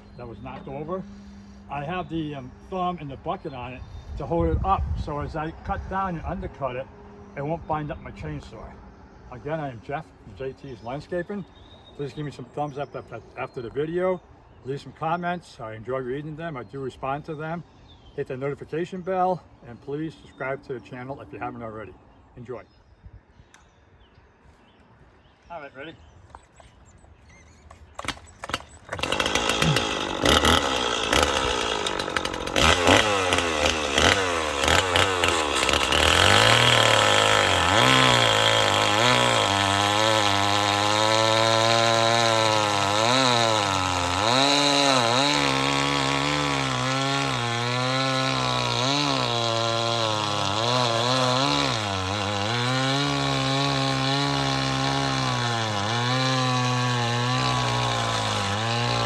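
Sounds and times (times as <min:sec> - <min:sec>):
chainsaw cutting log: 0:26.3 - 0:59.0.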